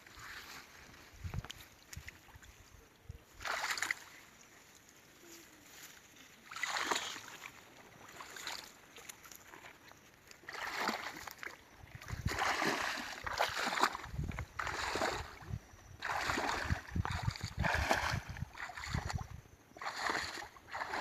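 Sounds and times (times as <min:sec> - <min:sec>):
water splashing: 0:03.3 - 0:04.4, 0:06.4 - 0:21.0.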